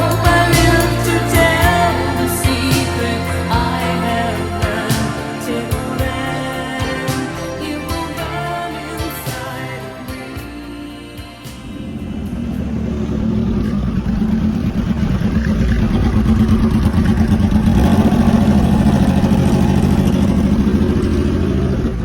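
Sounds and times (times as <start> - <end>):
motorcycle engine running: 0.0 - 8.1, 11.6 - 22.0
road and wind noise: 11.5 - 22.0.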